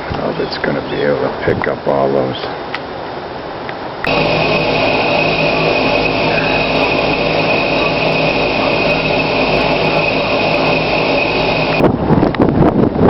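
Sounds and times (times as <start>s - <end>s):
machine drone with high whine: 4.1s - 11.9s.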